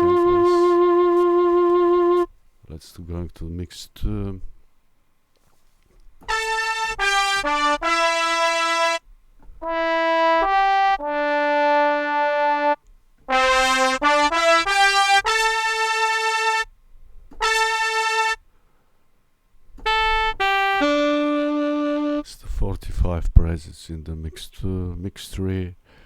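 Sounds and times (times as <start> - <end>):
sampled brass notes: 0.0 - 2.4, 6.2 - 18.5, 19.8 - 22.3.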